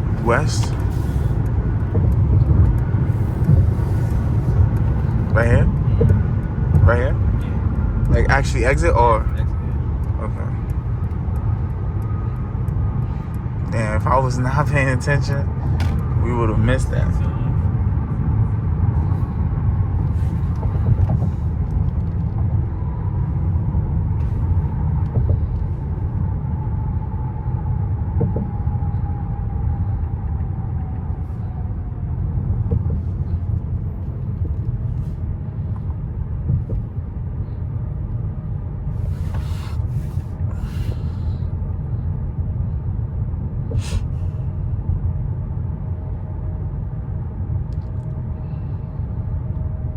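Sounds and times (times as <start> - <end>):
car road and engine rumble: 0.0 - 49.9
faint whine: 0.0 - 49.9
short hissing: 43.7 - 44.1.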